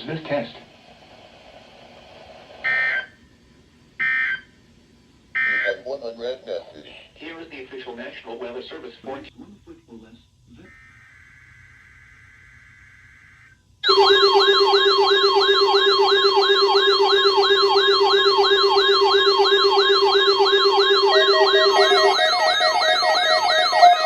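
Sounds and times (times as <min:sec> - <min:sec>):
weather radio siren alert: 0:13.8 - 0:24.0.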